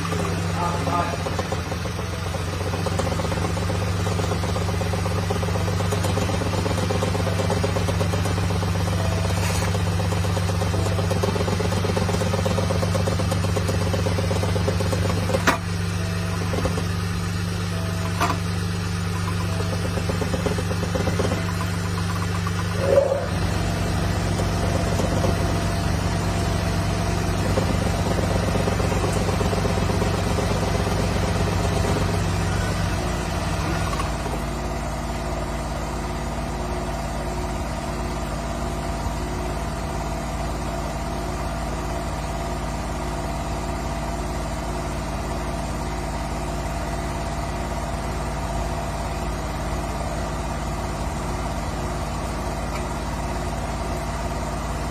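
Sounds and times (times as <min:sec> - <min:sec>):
car engine idling: 0:00.0 - 0:54.9
deep low hum: 0:15.2 - 0:34.4.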